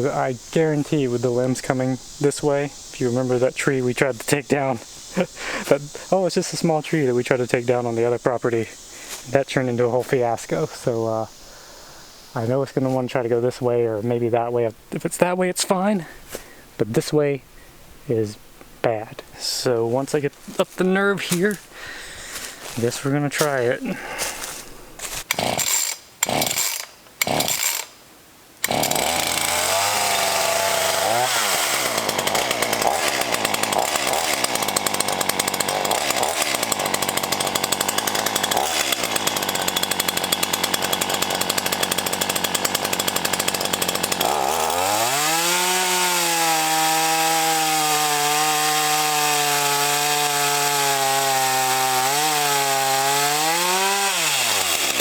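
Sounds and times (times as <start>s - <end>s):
chainsaw cutting a tree trunk: 0.0s - 11.2s, 24.2s - 28.0s, 28.6s - 55.0s.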